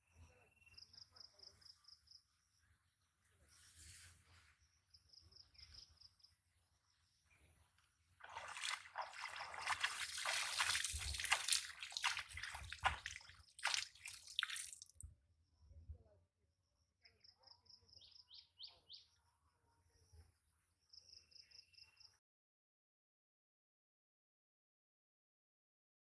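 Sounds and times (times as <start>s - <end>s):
water dripping: 8.2s - 15.1s
water splashing and sloshing: 8.2s - 15.1s.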